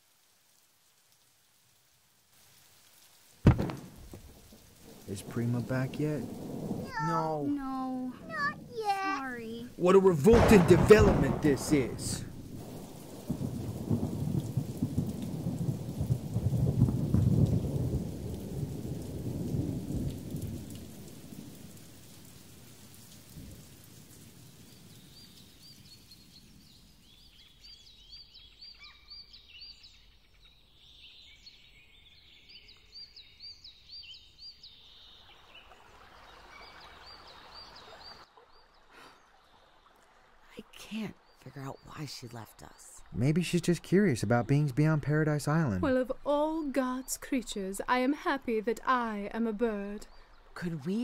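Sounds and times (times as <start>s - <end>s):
steady rain: 0.0s - 51.0s
thunder rumbling: 3.4s - 25.2s
birds chirping: 3.5s - 14.1s, 24.4s - 51.0s.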